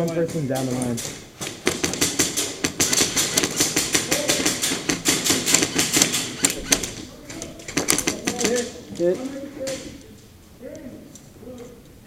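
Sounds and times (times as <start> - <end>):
airsoft guns firing: 0.2 - 8.8.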